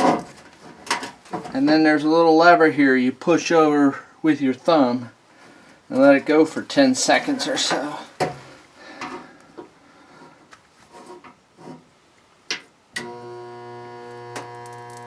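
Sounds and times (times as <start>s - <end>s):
spot welder electrical hum: 13.0s - 15.0s.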